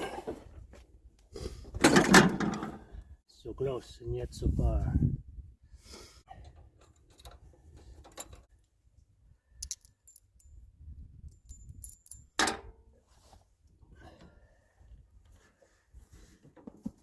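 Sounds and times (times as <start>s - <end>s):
metal hardware clinking: 9.6s - 10.6s, 11.3s - 12.7s.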